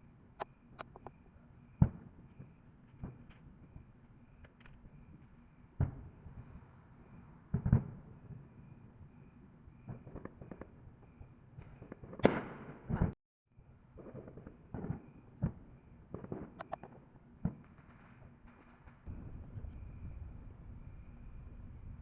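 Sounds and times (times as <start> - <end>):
fireworks bangs and cracks: 7.5 - 8.4, 11.6 - 13.2, 13.9 - 21.0.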